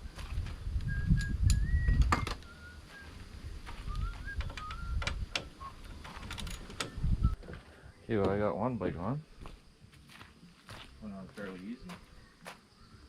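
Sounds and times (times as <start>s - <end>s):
bird singing whistled notes: 0.0s - 6.1s, 6.7s - 8.1s, 11.6s - 13.0s
sharp clicks and knocks: 4.3s - 7.0s.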